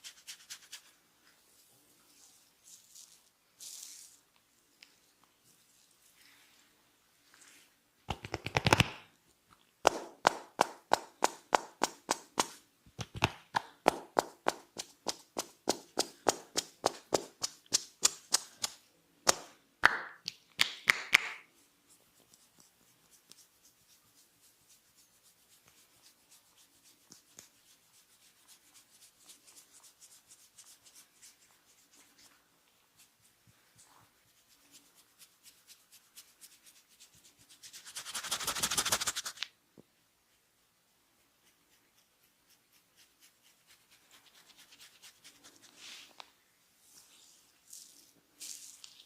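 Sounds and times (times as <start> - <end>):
soft rubbing: 0.0 - 7.9, 21.5 - 39.4, 40.2 - 49.0
rapid massage taps: 9.8 - 21.4.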